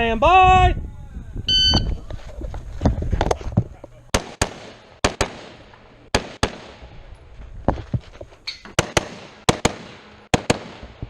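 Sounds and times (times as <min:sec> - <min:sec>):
rifle shots with echo: 0:04.1 - 0:07.0, 0:08.8 - 0:11.0.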